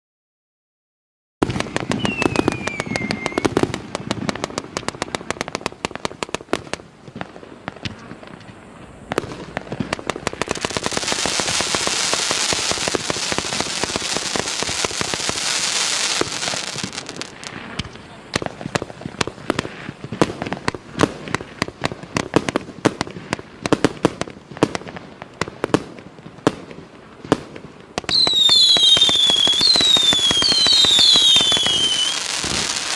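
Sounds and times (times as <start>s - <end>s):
falling firework whistle: 1.4s - 4.1s, 28.0s - 32.9s
high-pitched firework rush: 1.4s - 24.0s, 28.0s - 32.9s
fireworks launches and bursts: 1.4s - 32.9s.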